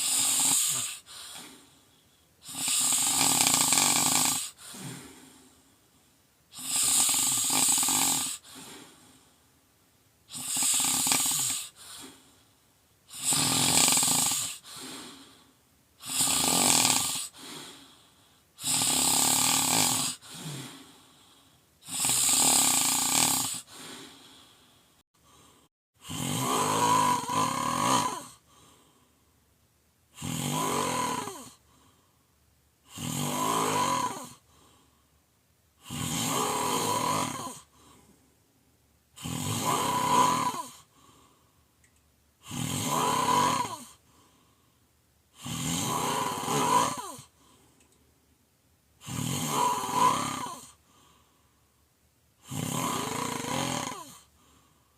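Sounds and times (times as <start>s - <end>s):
person snoring loudly: 0.0s - 1.7s, 2.4s - 5.4s, 6.5s - 9.1s, 10.3s - 12.3s, 13.1s - 15.4s, 16.0s - 18.0s, 18.6s - 24.4s, 25.3s - 28.7s, 30.1s - 31.6s, 32.8s - 34.4s, 35.8s - 37.7s, 39.2s - 40.9s, 42.4s - 44.0s, 45.3s - 47.4s, 49.0s - 50.8s, 52.4s - 54.3s
faint breath: 0.7s - 2.6s, 4.5s - 6.2s, 8.4s - 9.6s, 11.6s - 12.6s, 14.6s - 15.6s, 17.3s - 18.6s, 20.2s - 21.7s, 23.6s - 25.7s, 28.4s - 29.4s, 31.6s - 32.3s, 34.4s - 35.2s, 37.6s - 38.4s, 40.8s - 41.7s, 44.0s - 44.9s, 47.3s - 48.0s, 50.7s - 51.8s, 54.2s - 54.9s.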